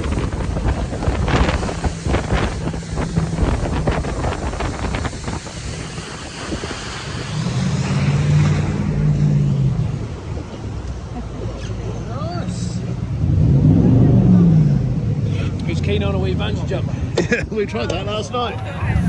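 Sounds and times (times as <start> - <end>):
wind buffeting microphone: 0.0 - 7.4, 18.3 - 19.0
boat engine drone: 18.3 - 19.0.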